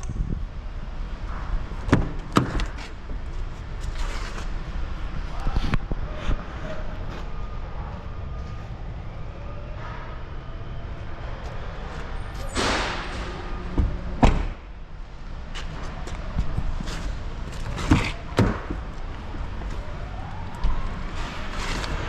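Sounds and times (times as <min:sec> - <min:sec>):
sharp slam: 0:12.4 - 0:13.6.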